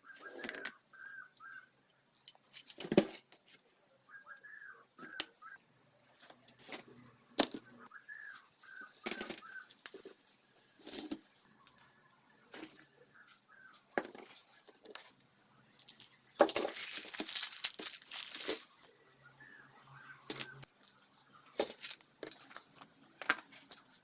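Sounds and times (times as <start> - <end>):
rustling scraping noise: 15.9 - 18.8.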